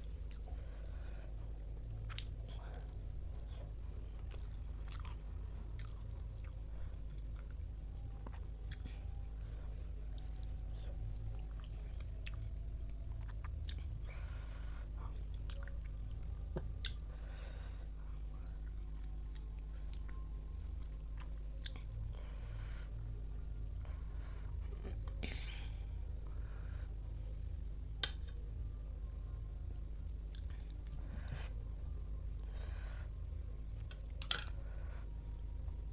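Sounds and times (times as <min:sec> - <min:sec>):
person chewing food: 0:00.0 - 0:17.3, 0:18.6 - 0:22.3
steady low hum: 0:00.0 - 0:35.9.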